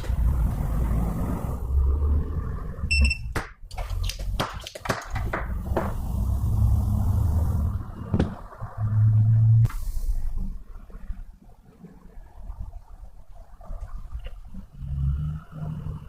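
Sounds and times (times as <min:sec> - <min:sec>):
short electronic beep: 0:02.9 - 0:03.3.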